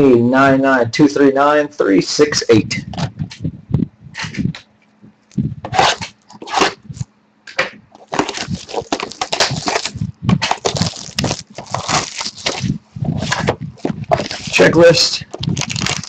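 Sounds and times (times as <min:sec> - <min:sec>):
plastic wrap and cardboard crinkling: 0:08.0 - 0:16.0.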